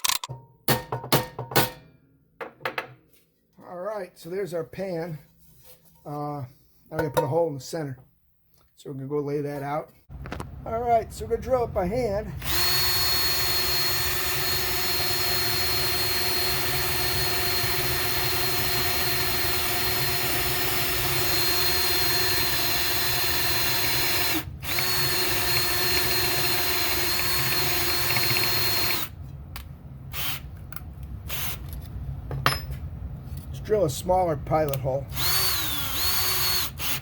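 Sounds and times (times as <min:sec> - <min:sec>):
electric drill boring metal: 0:12.4 - 0:29.1, 0:35.1 - 0:37.0.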